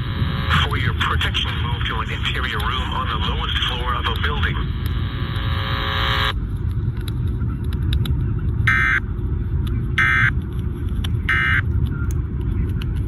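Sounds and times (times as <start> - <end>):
radio static crackles: 0.0 - 6.4
low rumble: 0.0 - 13.0.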